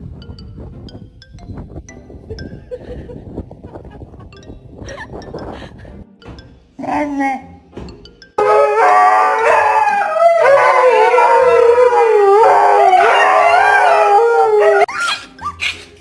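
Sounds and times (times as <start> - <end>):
dog howling: 8.4 - 15.6.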